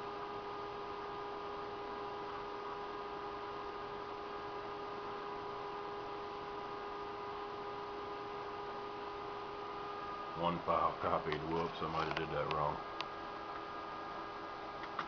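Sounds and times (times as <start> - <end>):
computer electrical hum: 0.0 - 15.0
steady whining tones: 4.9 - 15.0.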